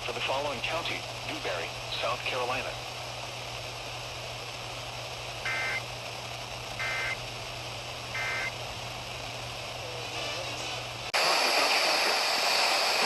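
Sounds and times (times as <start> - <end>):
radio hiss: 0.0 - 3.0, 5.4 - 5.9, 6.8 - 7.2, 8.2 - 8.5, 9.8 - 13.0
two-tone digital data warble: 5.5 - 5.8, 6.8 - 7.2, 8.2 - 8.5.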